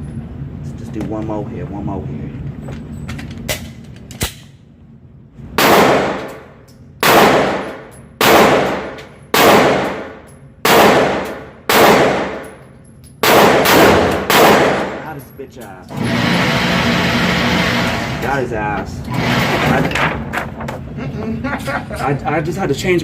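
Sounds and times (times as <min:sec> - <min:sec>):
handgun shots with echo: 0:05.6 - 0:06.4, 0:07.0 - 0:12.6, 0:13.2 - 0:15.1.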